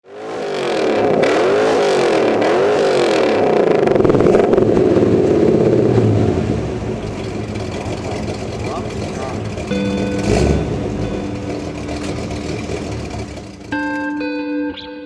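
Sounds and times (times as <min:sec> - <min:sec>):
car engine revving: 0:00.0 - 0:14.4.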